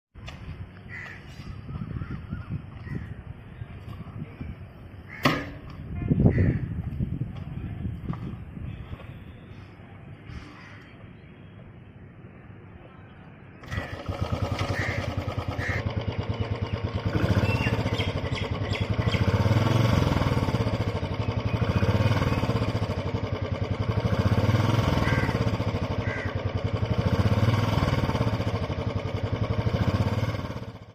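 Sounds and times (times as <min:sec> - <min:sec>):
motorcycle engine thumping: 0:05.2 - 0:09.2.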